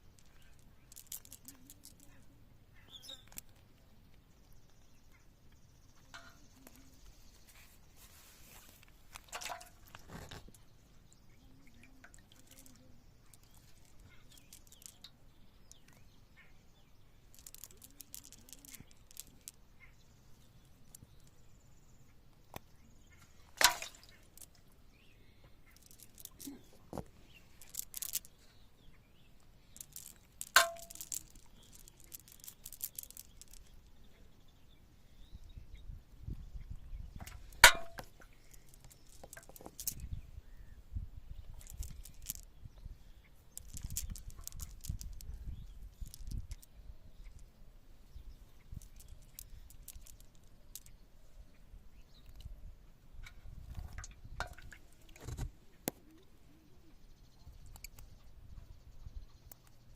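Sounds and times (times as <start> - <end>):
water splashes and drips: 9.2 - 10.0, 23.6 - 24.7, 53.9 - 55.2.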